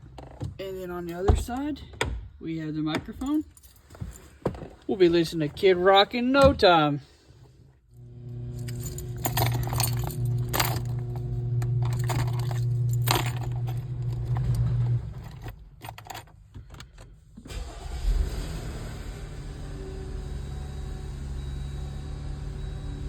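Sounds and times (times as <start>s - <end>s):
keys jangling and clicking: 3.2s - 4.7s, 8.6s - 17.1s
car engine starting and idling: 8.0s - 23.0s.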